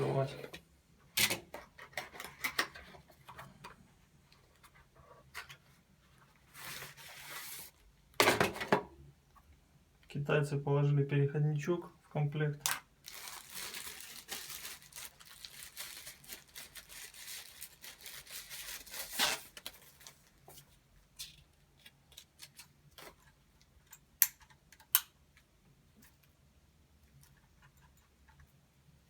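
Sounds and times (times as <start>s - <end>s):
packaging rustling and crinkling: 13.0s - 23.3s.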